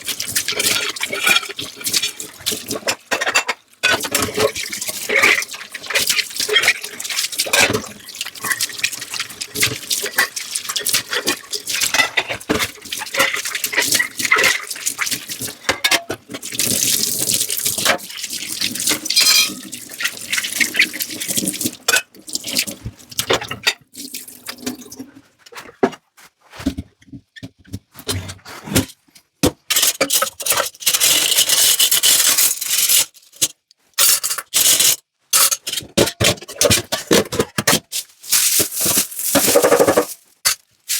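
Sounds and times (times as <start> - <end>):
tap water running into sink: 0.0 - 3.1, 3.9 - 23.4
dishes clinking: 19.1 - 19.6.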